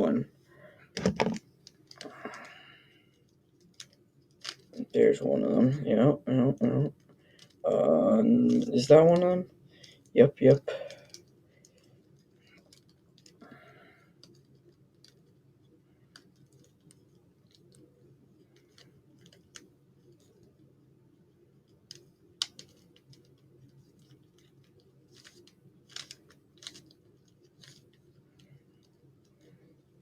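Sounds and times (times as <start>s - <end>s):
steady low hum: 0.0s - 30.0s
puzzle cube layers clicking: 21.9s - 28.0s.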